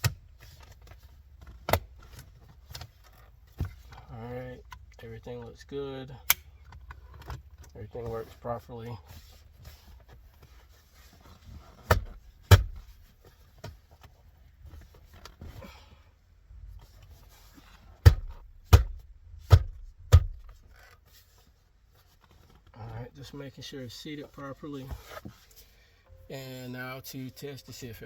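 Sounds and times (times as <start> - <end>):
faint rubbing and handling: 7.8 - 28.0.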